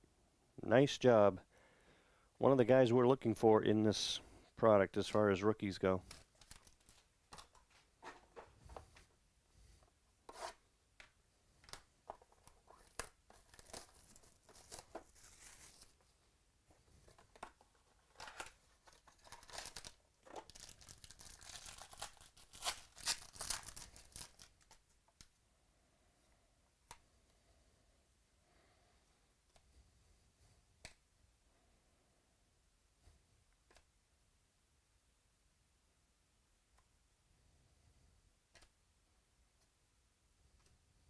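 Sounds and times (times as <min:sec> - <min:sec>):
card packaging crinkling and tearing: 0:06.0 - 0:07.6, 0:12.4 - 0:16.0, 0:17.1 - 0:25.0
cards clicking and rustling: 0:17.0 - 0:25.4.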